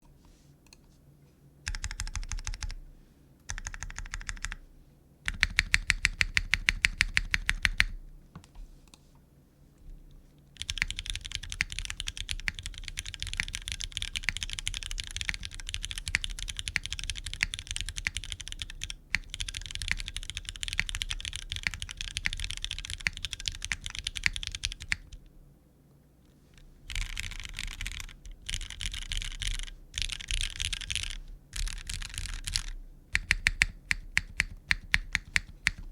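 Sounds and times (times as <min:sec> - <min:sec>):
typing on mechanical keyboard: 0:01.7 - 0:02.8, 0:03.5 - 0:04.6, 0:05.3 - 0:08.0, 0:10.6 - 0:25.2, 0:26.9 - 0:35.9.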